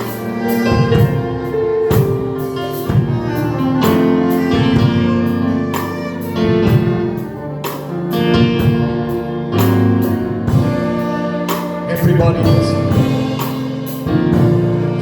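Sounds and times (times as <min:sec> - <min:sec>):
instrumental worship music: 0:00.0 - 0:15.0.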